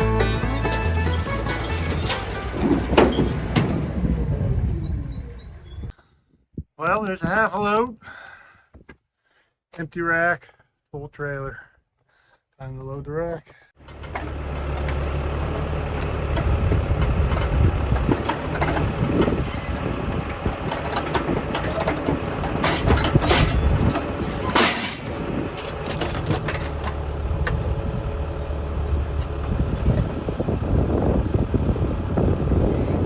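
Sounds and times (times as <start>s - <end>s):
tractor diesel engine running: 0.0s - 5.9s, 13.8s - 33.0s
logs knocking and clattering: 0.7s - 3.8s, 20.7s - 27.6s.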